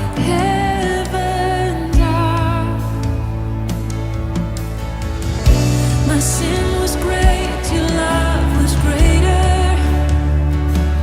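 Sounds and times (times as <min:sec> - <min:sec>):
pop song with vibrato vocals: 0:00.0 - 0:11.0.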